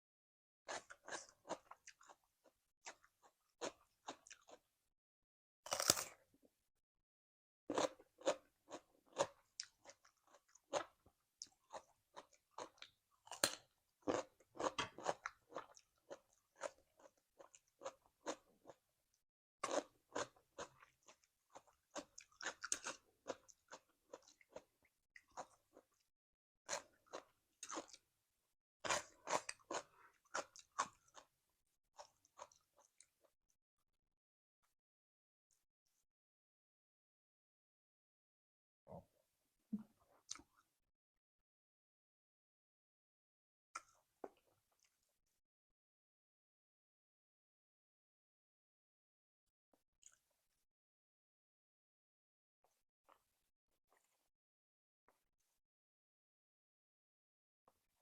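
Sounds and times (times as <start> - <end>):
crunching and chewing food: 0.7 - 4.7, 5.7 - 6.2, 7.7 - 18.9, 19.6 - 26.1, 26.7 - 28.1, 28.8 - 33.4.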